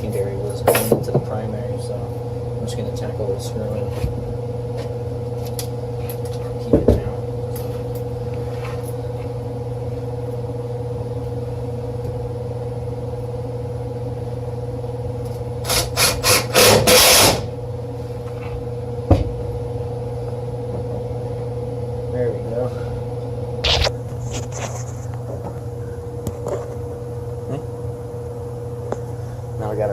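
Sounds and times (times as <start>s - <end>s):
steady mechanical hum: 0.0s - 29.9s
drill driving a screw: 15.6s - 17.5s.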